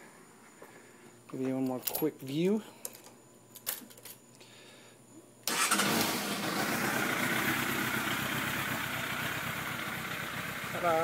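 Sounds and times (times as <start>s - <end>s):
motorcycle engine starting and idling: 5.4s - 11.0s.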